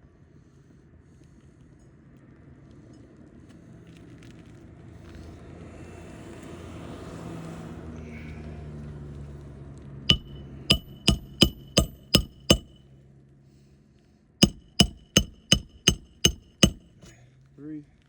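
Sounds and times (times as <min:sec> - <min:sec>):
hammer blows on roofing nail: 0:10.1 - 0:12.8, 0:14.4 - 0:17.1.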